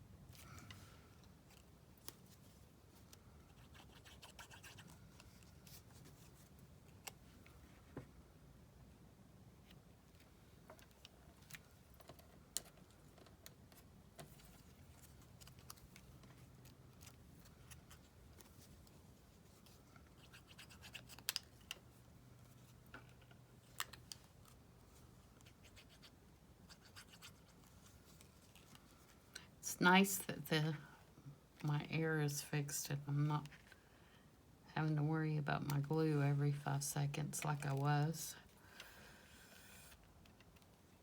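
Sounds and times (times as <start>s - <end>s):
scratching on paper: 3.5s - 5.0s, 26.7s - 27.7s.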